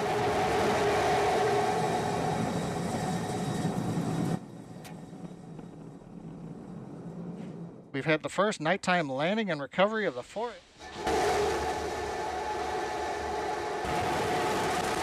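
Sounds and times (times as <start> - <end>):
low rumble: 0.0 - 8.1
rocket engines roaring: 0.0 - 8.8, 10.3 - 15.0.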